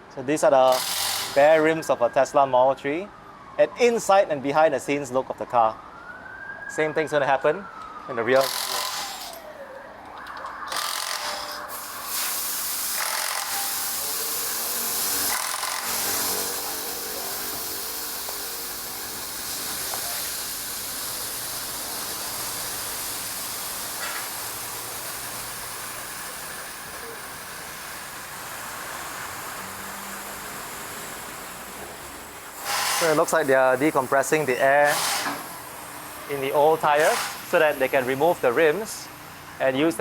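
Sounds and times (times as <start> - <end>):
air hissing out of a tyre: 11.3 - 36.3.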